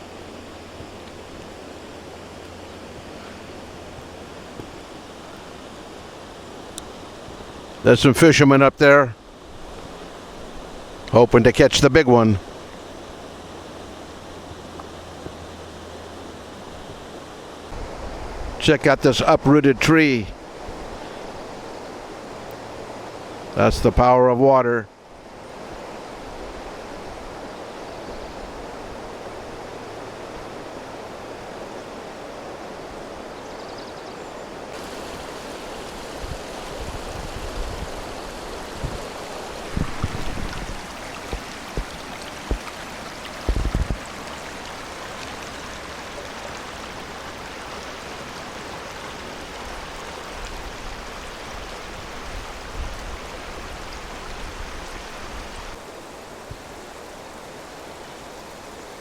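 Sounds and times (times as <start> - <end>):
stream rushing over rocks: 0.0 - 59.0
low thumps: 43.4 - 44.1.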